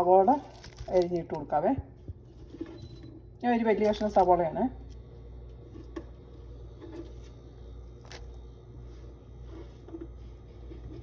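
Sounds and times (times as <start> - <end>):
onion rustling in a bowl: 0.0 - 4.6, 5.6 - 11.0
steady low hum: 0.0 - 11.0.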